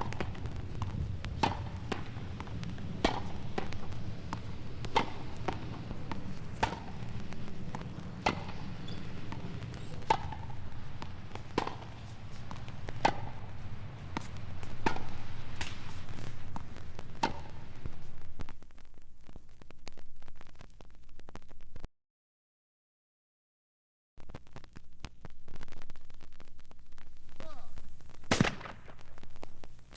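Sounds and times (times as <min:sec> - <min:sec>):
chopping blows: 0:00.0 - 0:18.7, 0:27.4 - 0:29.8
low steady rumble: 0:00.0 - 0:21.8.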